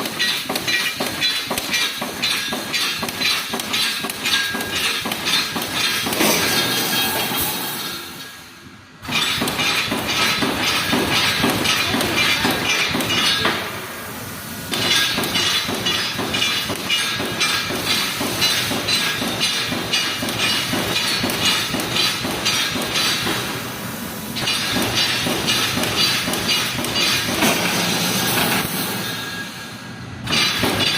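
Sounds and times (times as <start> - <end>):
welding machine clattering: 0.0 - 8.4, 9.0 - 13.8, 14.6 - 29.6, 30.2 - 30.9.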